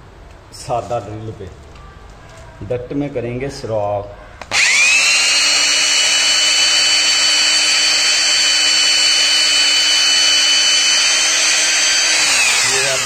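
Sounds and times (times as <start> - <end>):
electric drill whining: 4.5 - 13.0.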